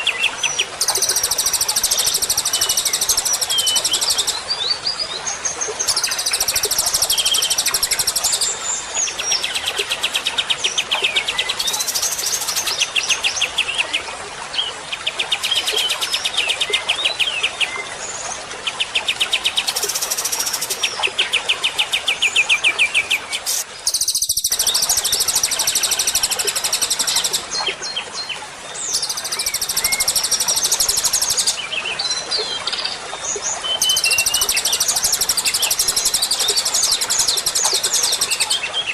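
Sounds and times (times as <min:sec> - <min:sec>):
songbird song with rapid trills: 0:19.4 - 0:38.9.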